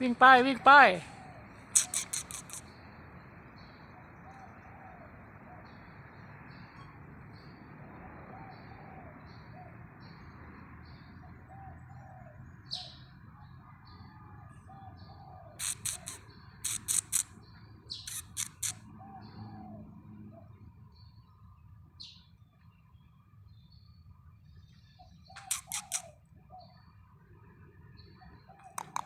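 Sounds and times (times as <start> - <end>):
squirrel chirping: 0.0 - 2.8, 15.6 - 18.9, 25.3 - 26.1, 28.6 - 29.0
loud sharp squirrel calls: 0.3 - 3.0, 14.6 - 19.6, 25.2 - 26.2, 28.5 - 29.0.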